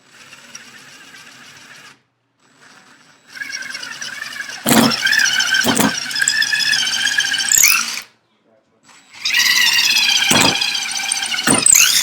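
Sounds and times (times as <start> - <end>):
impact driver drilling wood: 3.4 - 8.0, 9.2 - 12.0.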